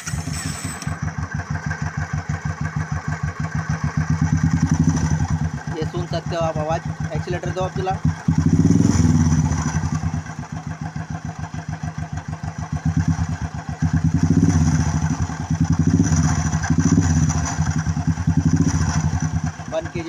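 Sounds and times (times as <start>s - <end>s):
engine grinding noise: 0.0s - 1.3s, 3.9s - 10.4s, 12.8s - 20.0s
motorcycle engine revving: 0.0s - 20.0s.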